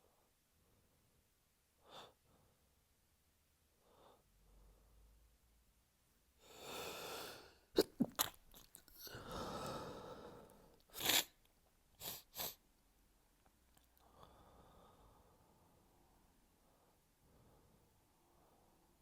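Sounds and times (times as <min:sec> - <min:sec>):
person sneezing: 0:10.9 - 0:11.4.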